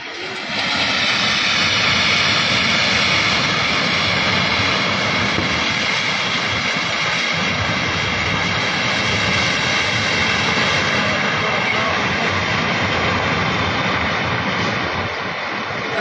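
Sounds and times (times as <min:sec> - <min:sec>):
river floodwater roaring: 0:13.6 - 0:16.0.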